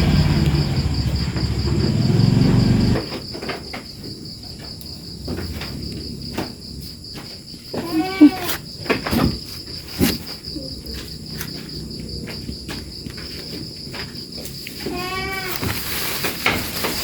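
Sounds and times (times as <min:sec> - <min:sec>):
loud low rumble: 0:00.0 - 0:03.0
crickets chirping: 0:00.0 - 0:17.0
goat kid bleating: 0:07.8 - 0:08.6, 0:14.8 - 0:15.8.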